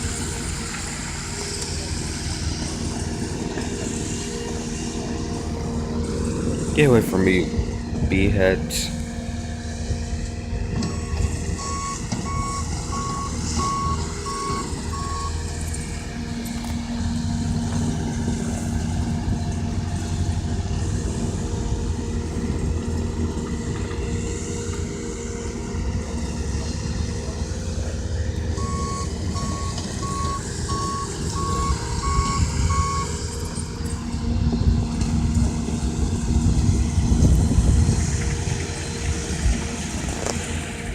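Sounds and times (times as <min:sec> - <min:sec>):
heavy vehicle engine running: 0:00.0 - 0:40.9
reversing alarm beeping: 0:10.7 - 0:16.0, 0:28.5 - 0:34.0.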